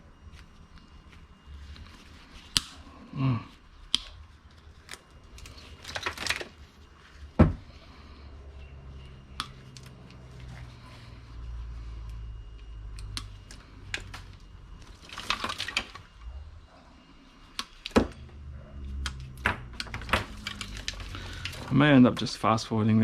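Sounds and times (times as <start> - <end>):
cables being snipped and handled: 0.1 - 2.9, 3.8 - 6.6, 9.2 - 10.8, 12.0 - 16.2, 17.5 - 18.0.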